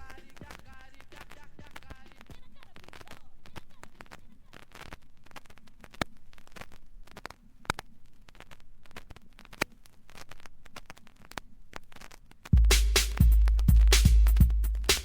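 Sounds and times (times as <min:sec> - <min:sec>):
electronic bass beat: 0:00.0 - 0:02.2, 0:12.6 - 0:15.0
vinyl clicks and pops: 0:00.0 - 0:12.6.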